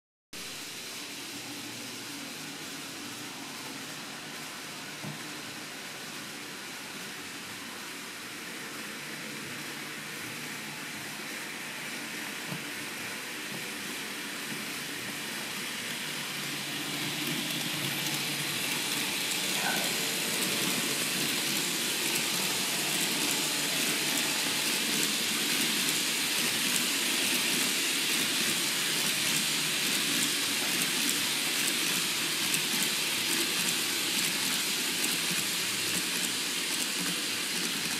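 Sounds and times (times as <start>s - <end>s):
model train rattling on rails: 8.9s - 37.9s.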